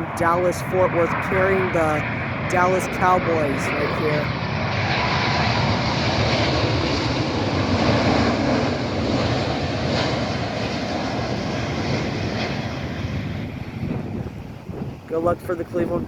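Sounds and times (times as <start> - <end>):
jet engines roaring: 0.0 - 16.0.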